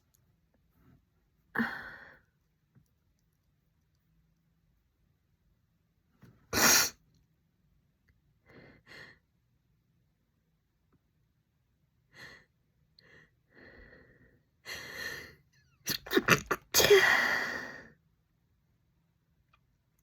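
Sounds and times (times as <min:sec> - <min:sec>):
woman sneezing: 0:06.6 - 0:07.0, 0:15.9 - 0:17.6.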